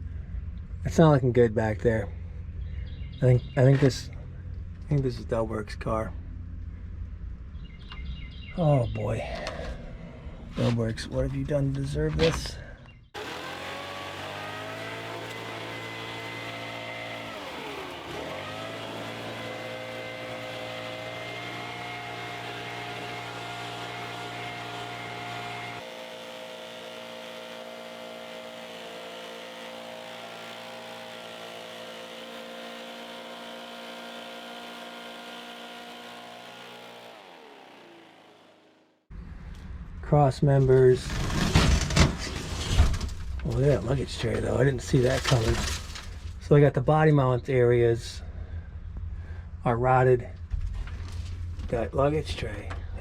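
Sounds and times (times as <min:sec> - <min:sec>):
motor running: 0:13.2 - 0:39.1.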